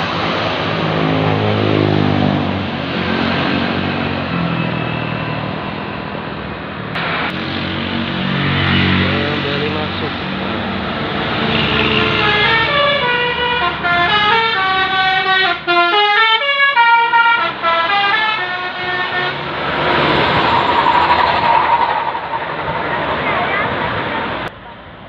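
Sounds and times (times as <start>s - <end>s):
bus passing close by: 0.0s - 25.0s
multi-trumpet air horn tune: 11.5s - 19.5s.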